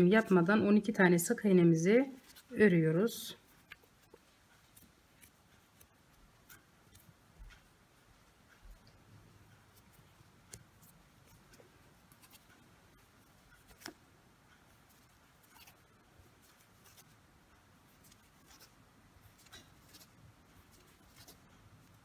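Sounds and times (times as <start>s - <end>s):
crochet hook clicking and rubbing: 2.2s - 2.6s, 3.4s - 22.0s.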